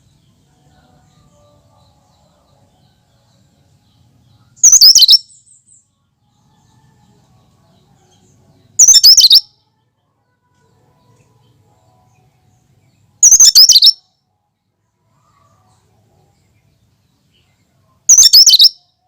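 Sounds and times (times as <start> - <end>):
songbird warbling: 4.6 - 5.2, 8.8 - 9.5, 13.2 - 14.0, 18.1 - 18.7.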